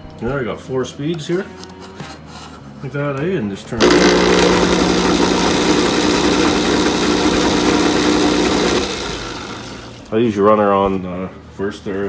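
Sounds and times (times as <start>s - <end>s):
lathe motor whirring: 3.8s - 10.2s.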